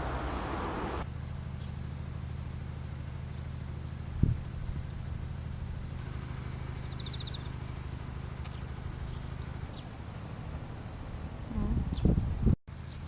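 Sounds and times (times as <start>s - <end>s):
insects chirping: 0.0s - 1.0s
steady low rumble: 0.0s - 12.6s.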